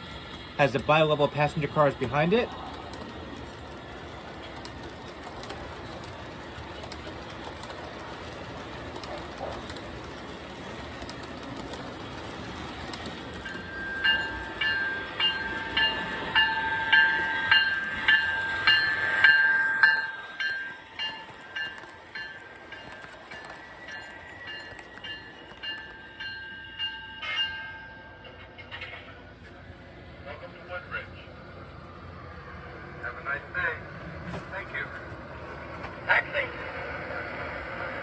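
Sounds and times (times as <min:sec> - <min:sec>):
locomotive bell ringing: 0:00.0 - 0:06.0, 0:06.8 - 0:29.2
model train running on track: 0:00.0 - 0:38.0.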